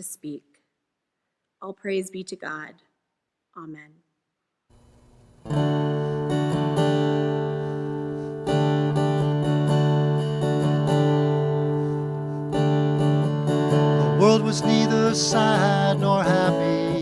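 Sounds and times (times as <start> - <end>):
acoustic guitar chords and picking: 4.8 - 17.0.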